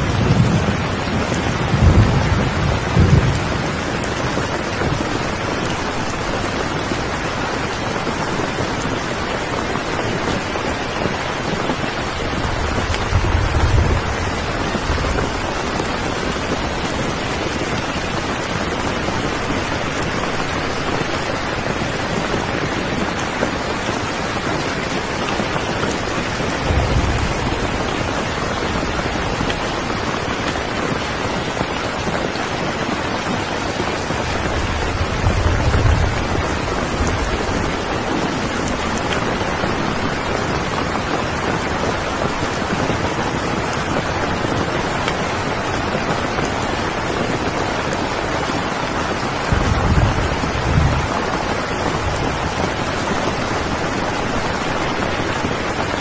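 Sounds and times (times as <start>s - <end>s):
low rumbles of thunder: 0.0s - 5.8s, 11.8s - 18.2s, 25.9s - 31.7s, 33.8s - 39.1s, 49.4s - 53.8s
steady rain: 0.0s - 56.0s.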